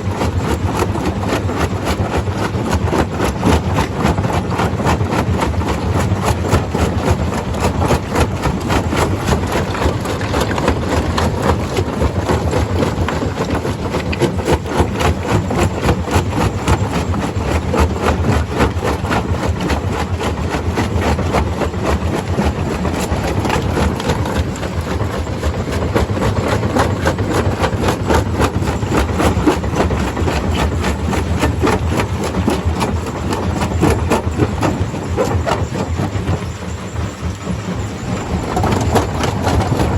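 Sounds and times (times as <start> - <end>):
stone crusher engine drone: 0.0 - 39.9
stone crusher rattling: 6.4 - 20.2, 37.2 - 39.9.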